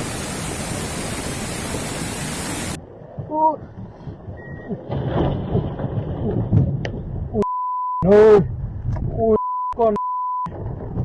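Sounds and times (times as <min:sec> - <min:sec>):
censor bleep: 0:07.4 - 0:08.1, 0:09.4 - 0:10.5.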